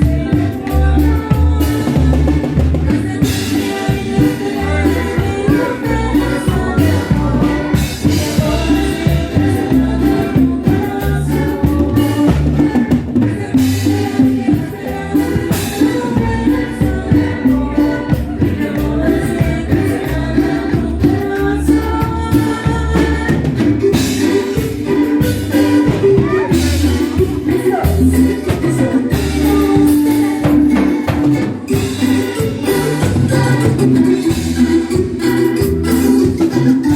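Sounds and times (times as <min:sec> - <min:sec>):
band playing dance music: 0:00.0 - 0:36.9.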